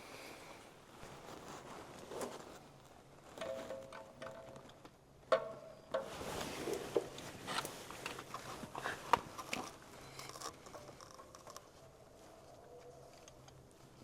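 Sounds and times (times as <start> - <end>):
hand tools clicking and knocking: 3.4 - 11.7.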